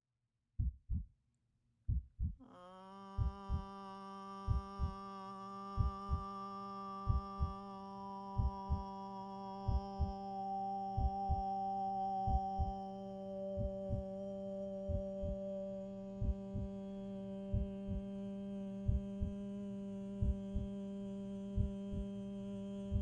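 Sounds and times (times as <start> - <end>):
slow heartbeat: 0.6 - 1.1, 1.9 - 2.4, 3.1 - 3.7, 4.4 - 5.0, 5.7 - 6.3, 7.0 - 7.6, 8.3 - 9.0, 9.6 - 10.2, 11.0 - 11.6, 12.2 - 12.8, 13.5 - 14.1, 14.8 - 15.5, 16.2 - 16.8, 17.5 - 18.2, 18.8 - 19.4, 20.2 - 20.8, 21.5 - 22.2
sustained drone: 2.5 - 23.0.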